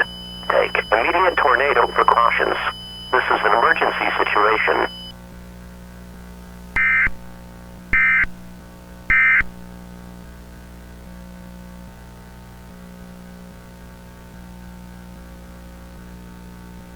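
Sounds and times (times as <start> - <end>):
digital data bursts: 0.0 - 5.1
electrical hum: 0.0 - 5.1.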